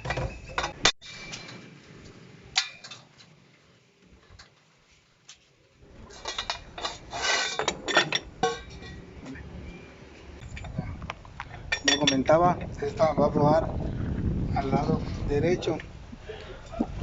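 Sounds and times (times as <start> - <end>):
metal tools clinking: 6.1 - 9.1, 11.5 - 12.4.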